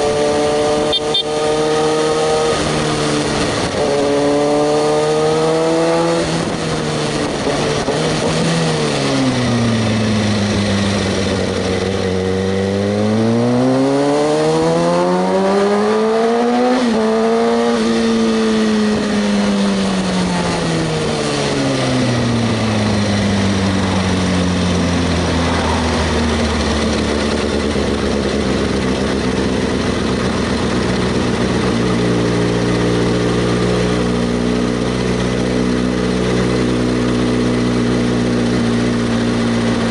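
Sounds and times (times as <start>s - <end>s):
motorcycle engine revving: 0.0s - 39.9s
steady rushing noise: 20.5s - 29.1s.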